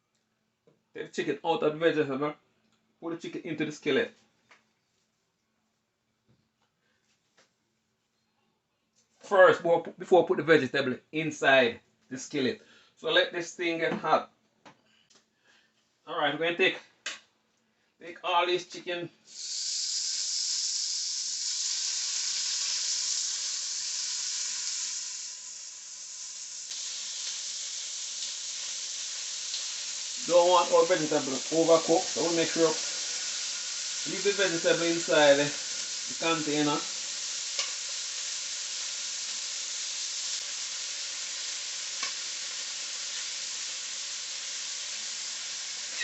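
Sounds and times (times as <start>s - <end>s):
chicken sizzling in a skillet: 19.3s - 46.0s.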